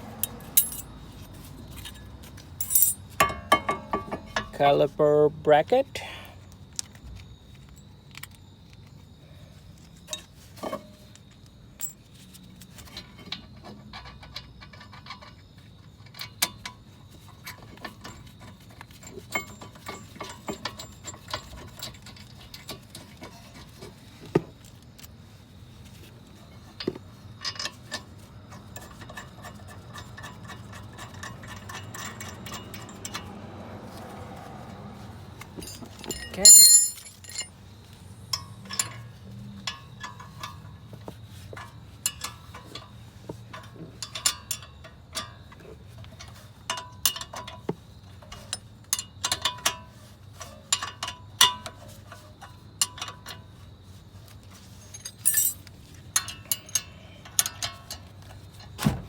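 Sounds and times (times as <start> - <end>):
metallic clinks of tools: 0.2 - 0.9, 1.8 - 4.5, 35.6 - 37.6, 54.8 - 57.8.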